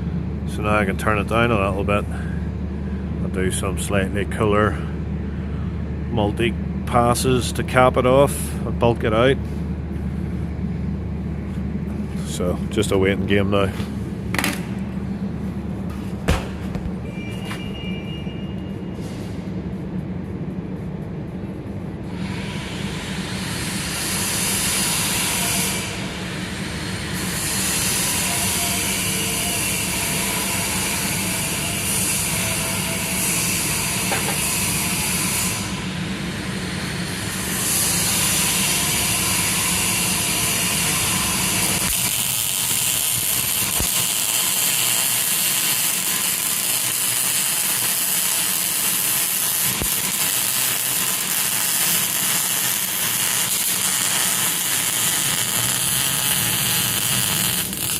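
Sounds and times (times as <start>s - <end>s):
electric arc welding hiss: 36.8s - 57.9s.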